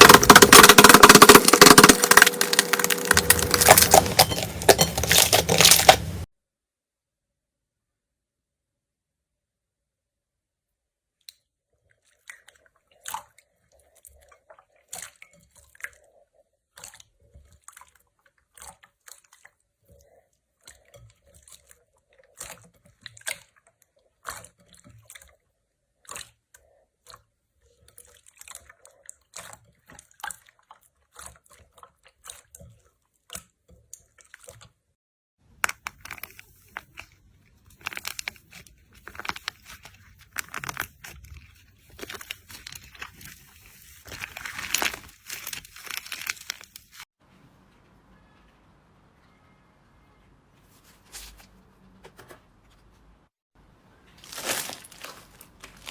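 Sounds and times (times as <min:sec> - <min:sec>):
slime squished by hand: 0:00.0 - 0:06.3
wet crackles and pops: 0:00.0 - 0:06.3.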